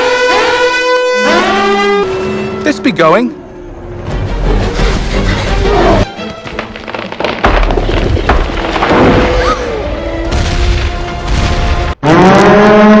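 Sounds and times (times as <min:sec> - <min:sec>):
film score music: 0:00.0 - 0:07.5
booms and splintering crashes: 0:06.5 - 0:12.0.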